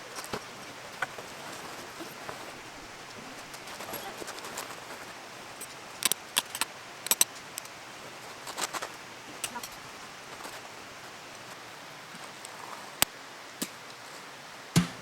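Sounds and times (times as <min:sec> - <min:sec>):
faint steady hiss: 0:00.0 - 0:15.0
small hard objects clicking: 0:06.0 - 0:07.7.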